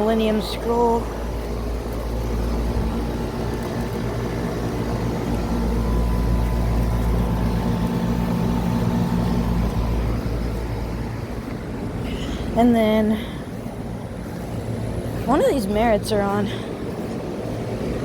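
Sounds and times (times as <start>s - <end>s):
condenser fan whoosh: 0.0s - 13.1s
compressor hum: 0.0s - 18.0s.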